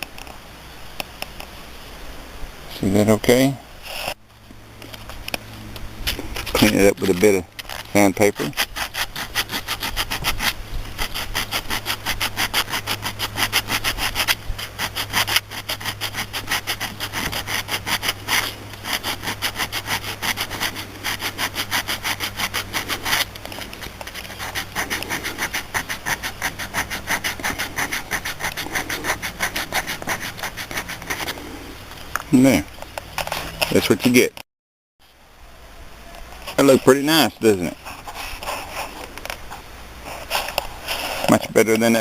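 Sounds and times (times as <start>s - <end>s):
sandpaper rasping on metal: 6.3s - 31.6s.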